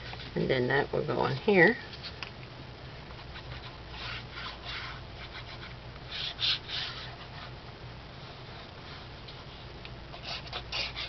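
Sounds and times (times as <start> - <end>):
paper rubbing and rustling: 3.2 - 11.0.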